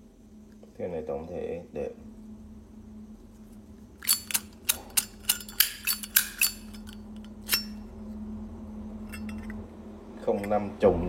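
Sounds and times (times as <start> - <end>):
lighter metal clicks: 4.0 - 7.8.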